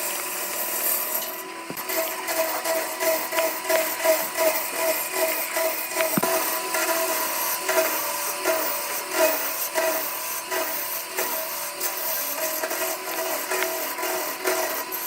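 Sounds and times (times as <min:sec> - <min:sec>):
wood lathe tool scraping wood: 0:00.0 - 0:15.0.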